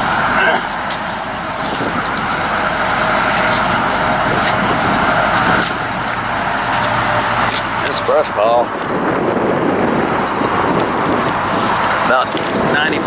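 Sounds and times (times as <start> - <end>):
truck engine idling: 0.0 - 13.0
sharp clicks and crackles: 10.8 - 12.6.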